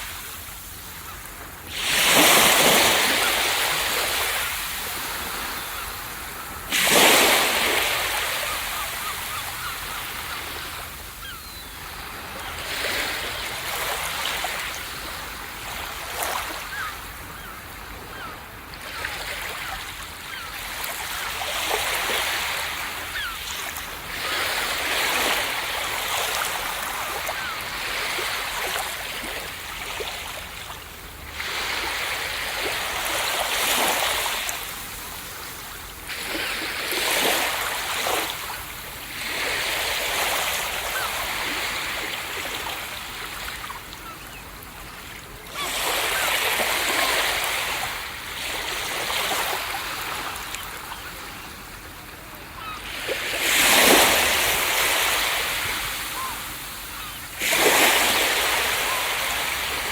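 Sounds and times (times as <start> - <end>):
ocean waves breaking: 0.0 - 17.5, 52.3 - 59.9.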